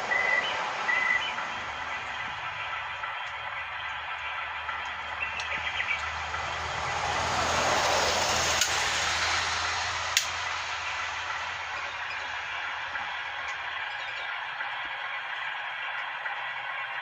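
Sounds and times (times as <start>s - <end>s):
sharp clicks: 8.5s - 8.8s, 10.1s - 10.5s.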